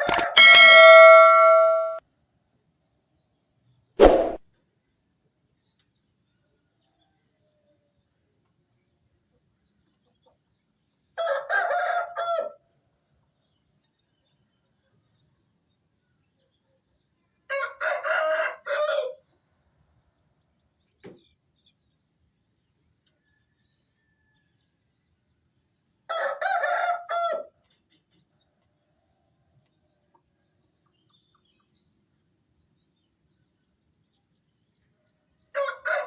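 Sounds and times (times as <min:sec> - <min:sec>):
rooster crowing: 0:00.0 - 0:02.0, 0:11.2 - 0:12.6, 0:17.5 - 0:19.2, 0:26.1 - 0:27.6, 0:35.5 - 0:36.0.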